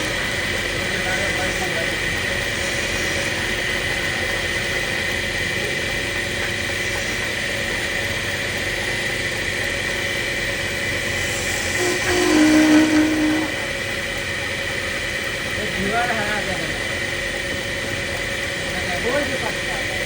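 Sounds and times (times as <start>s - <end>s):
lathe motor humming: 0.0s - 20.0s
louder low steady tone: 11.7s - 14.1s.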